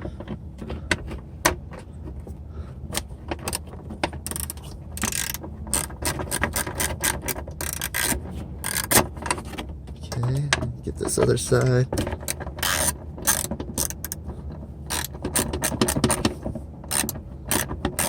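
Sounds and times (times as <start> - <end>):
socket ratchet clicking: 4.2 - 9.0, 12.2 - 14.2, 14.9 - 16.3, 16.9 - 18.0
sharp metal clicks: 16.9 - 18.0.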